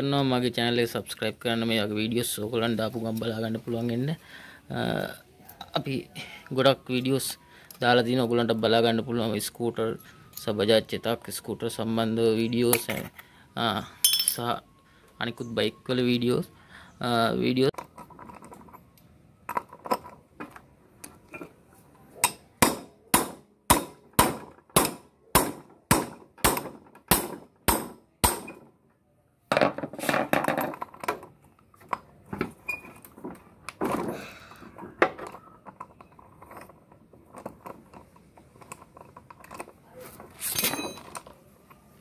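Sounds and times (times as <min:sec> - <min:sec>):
hammer striking metal: 0:22.2 - 0:28.6.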